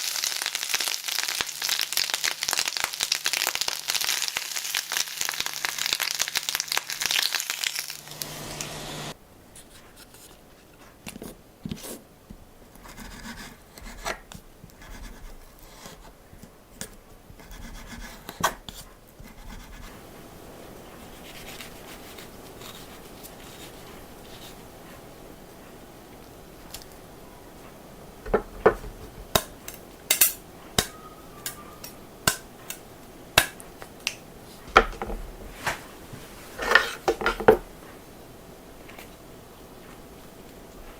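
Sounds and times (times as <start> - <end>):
loud crackling hiss: 0.0 - 9.2
rubbing and scraping: 17.4 - 25.2.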